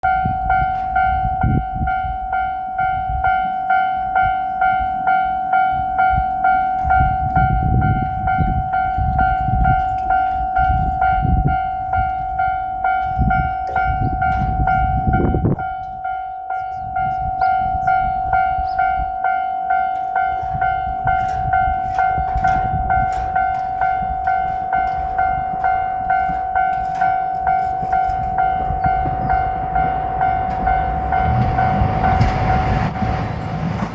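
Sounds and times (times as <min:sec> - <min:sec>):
level crossing warning bell: 0:00.0 - 0:33.9
sharp clicks of approaching train: 0:00.2 - 0:02.2, 0:03.2 - 0:16.1, 0:19.8 - 0:33.9
low rumble: 0:20.6 - 0:33.9.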